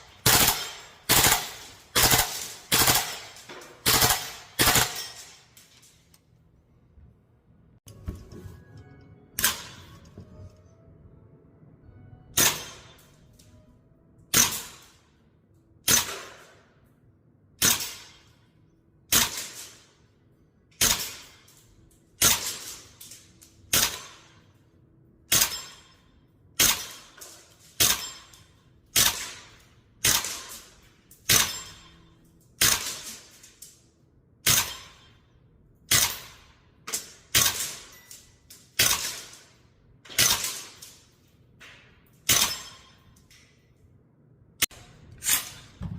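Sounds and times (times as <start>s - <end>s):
airsoft rifle shots: 0.0s - 5.4s, 15.8s - 16.6s, 19.1s - 19.9s, 29.0s - 30.7s, 32.6s - 33.4s, 35.9s - 37.9s, 38.7s - 39.4s, 40.1s - 40.9s.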